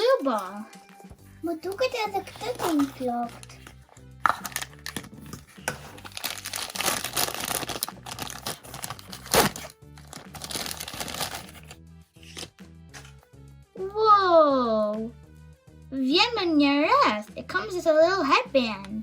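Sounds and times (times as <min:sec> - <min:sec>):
background music: 0:00.0 - 0:19.0
plastic packaging crinkling: 0:04.3 - 0:11.8.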